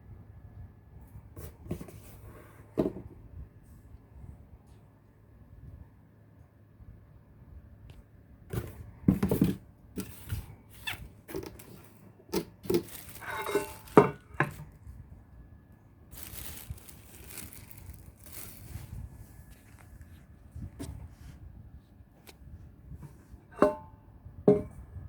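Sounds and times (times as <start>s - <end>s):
packaging crinkling and tearing: 10.8s - 14.6s, 16.1s - 20.2s
soft rustling: 12.6s - 14.9s, 16.1s - 22.4s.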